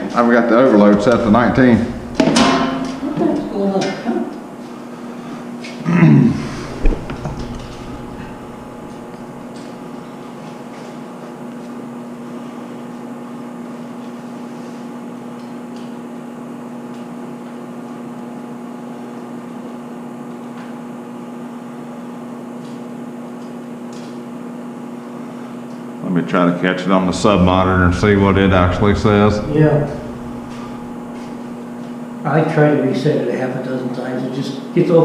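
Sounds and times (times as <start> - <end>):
electrical hum: 0.0 - 15.2, 24.2 - 35.0.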